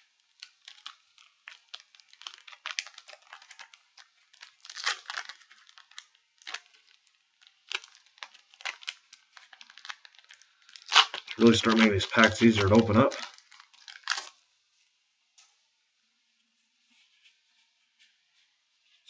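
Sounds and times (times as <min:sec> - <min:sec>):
foil wrapper tearing and crinkling: 0:00.0 - 0:14.4.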